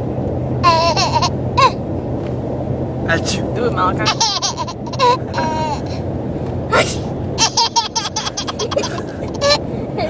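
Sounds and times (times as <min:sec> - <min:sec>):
baby laughing: 0:00.6 - 0:01.8, 0:04.0 - 0:06.0, 0:07.4 - 0:09.6
boy sneezing: 0:06.7 - 0:07.1.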